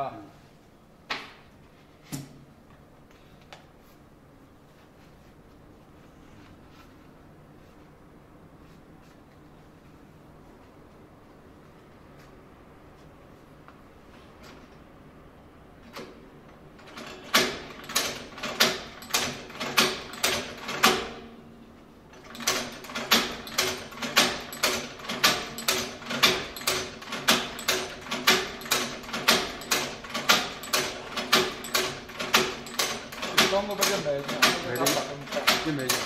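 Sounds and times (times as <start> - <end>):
sewing machine clacking: 16.8 - 21.2, 22.1 - 36.0.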